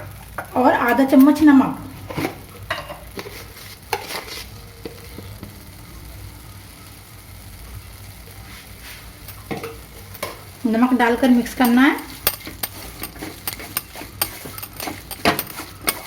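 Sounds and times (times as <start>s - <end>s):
vegetables sizzling in oil: 0.0s - 16.0s
spoon scraping a pan: 2.0s - 5.5s, 8.4s - 16.0s.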